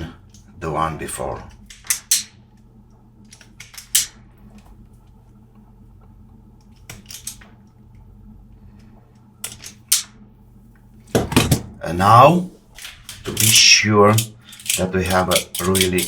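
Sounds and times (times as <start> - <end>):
small parts and tools clicking: 1.5 - 2.4, 3.2 - 4.2, 6.7 - 7.5, 8.8 - 10.1, 12.8 - 16.0.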